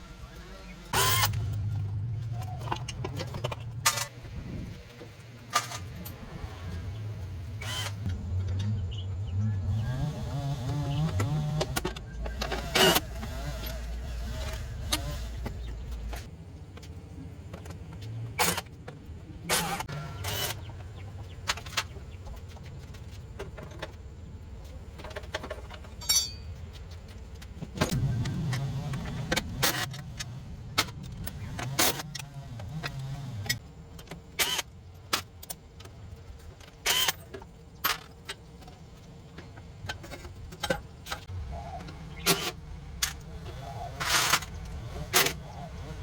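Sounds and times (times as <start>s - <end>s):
low rumble: 1.0s - 10.2s
metal tools clinking: 25.0s - 26.7s.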